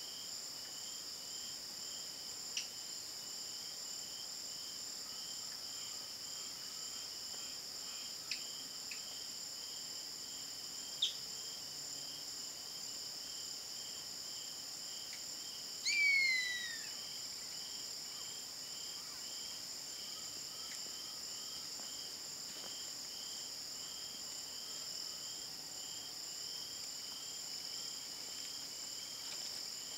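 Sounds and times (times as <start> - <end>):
insect chorus with pulsing chirp: 0.0 - 29.9
hawk scream: 15.8 - 17.0.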